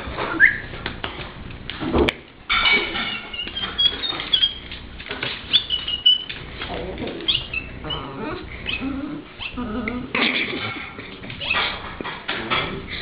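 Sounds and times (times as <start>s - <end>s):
dog whining: 3.3s - 4.8s, 5.5s - 10.8s, 11.4s - 13.0s.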